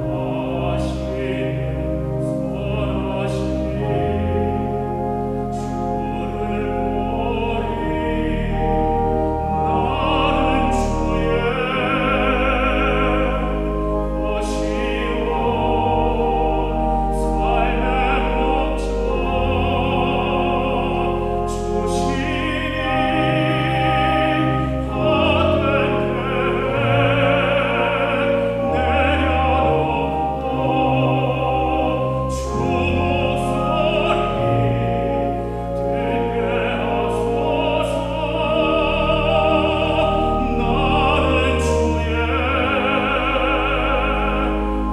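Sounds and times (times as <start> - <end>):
held instrumental accompaniment: 0.0 - 44.9
solo classical voice singing: 0.0 - 44.9.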